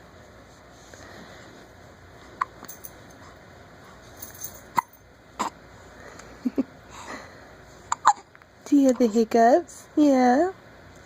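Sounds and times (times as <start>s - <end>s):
baby hiccupping: 7.9s - 8.3s.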